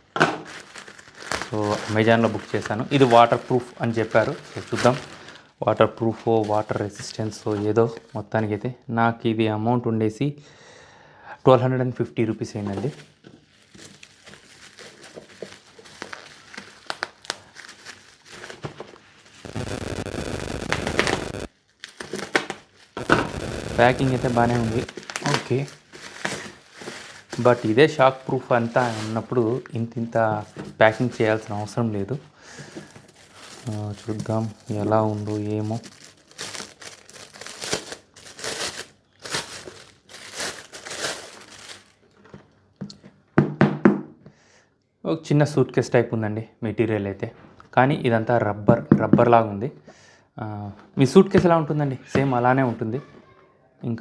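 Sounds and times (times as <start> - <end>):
packaging clicks and crinkles: 0.4 - 5.5, 12.6 - 29.8, 32.6 - 42.6
wrapping crinkling rustle: 0.4 - 8.3, 12.3 - 42.6.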